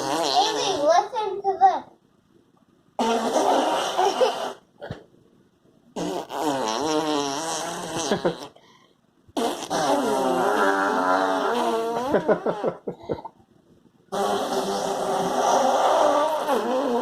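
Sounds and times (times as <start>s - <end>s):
fart noises: 0.0s - 0.8s, 3.0s - 5.0s, 6.0s - 8.6s, 9.3s - 13.4s, 14.1s - 17.0s.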